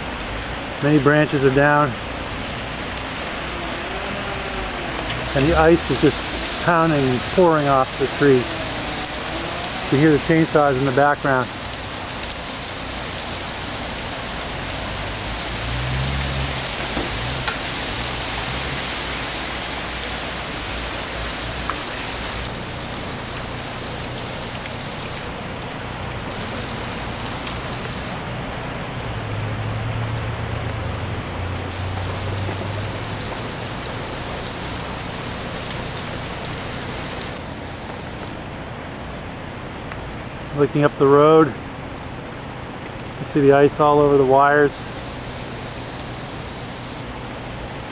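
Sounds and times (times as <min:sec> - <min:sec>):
meltwater dripping off trees: 0:00.0 - 0:41.0, 0:41.7 - 0:47.9
distant chainsaw droning: 0:03.1 - 0:10.9.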